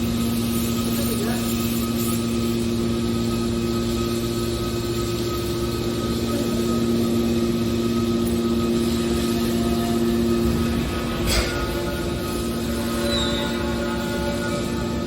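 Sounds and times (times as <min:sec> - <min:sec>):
hydraulic power unit humming: 0:00.0 - 0:15.0.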